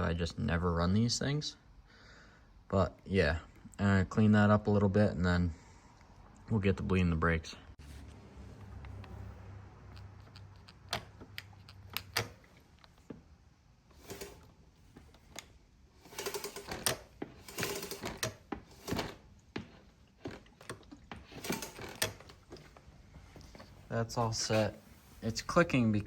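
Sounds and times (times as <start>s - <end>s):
mechanical clicks and rattles: 9.8s - 13.0s, 13.9s - 19.4s, 20.2s - 22.8s.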